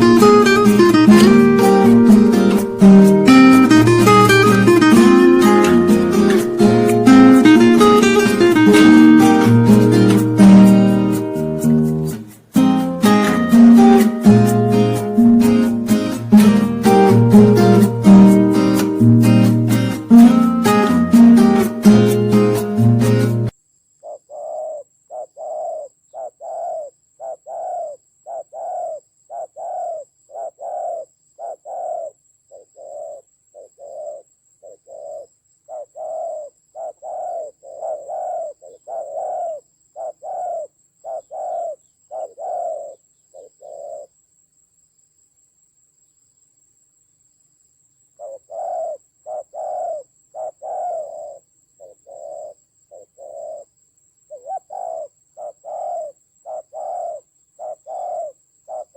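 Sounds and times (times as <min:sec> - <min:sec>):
doves cooing: 0:34.9 - 0:43.0, 0:48.2 - 0:51.4, 0:54.3 - 0:58.9.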